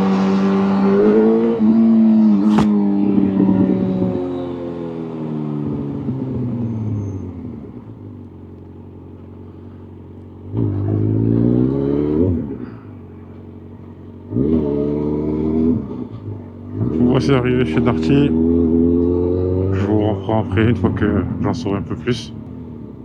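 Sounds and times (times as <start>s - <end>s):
motorcycle engine accelerating: 0.0s - 23.0s.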